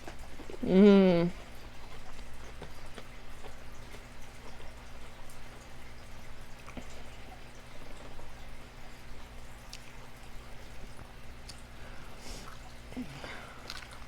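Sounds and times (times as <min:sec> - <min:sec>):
person chewing salad: 0:00.0 - 0:05.2, 0:09.6 - 0:14.0
low electrical hum: 0:00.0 - 0:14.0.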